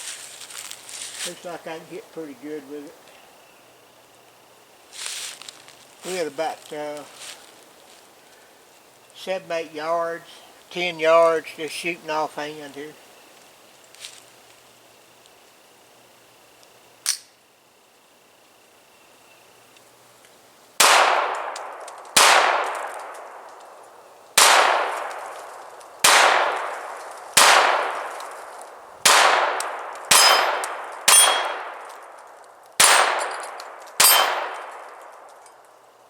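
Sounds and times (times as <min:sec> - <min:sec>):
pistol shots: 0:20.8 - 0:23.4, 0:24.4 - 0:25.3, 0:26.0 - 0:28.2, 0:29.0 - 0:31.9, 0:32.8 - 0:35.1.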